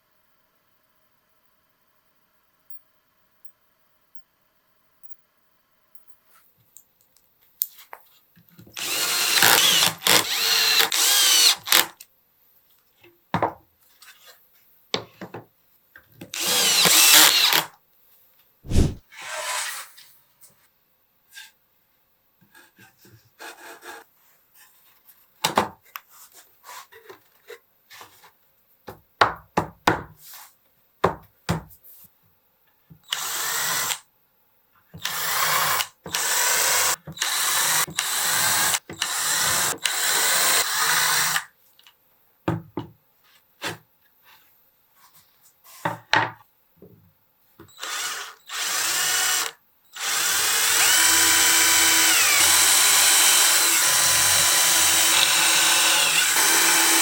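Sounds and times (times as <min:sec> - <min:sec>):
power drill running: 0:08.8 - 0:11.9, 0:16.4 - 0:17.7, 0:33.1 - 0:33.9, 0:35.0 - 0:41.4, 0:47.8 - 0:57.0.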